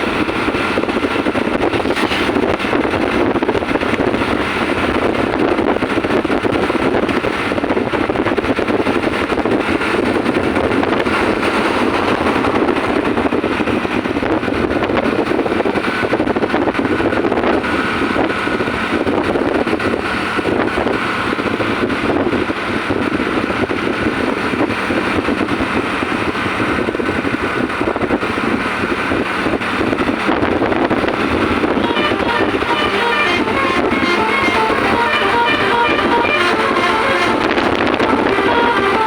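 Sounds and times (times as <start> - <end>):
vehicles driving on road: 0.0 - 39.0
music: 31.8 - 39.0.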